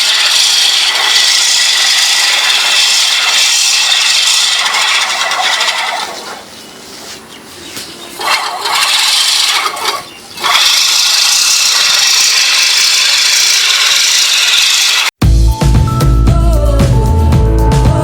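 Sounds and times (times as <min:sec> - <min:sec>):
reel lawn mower whirring: 0:00.0 - 0:06.7, 0:07.6 - 0:15.2.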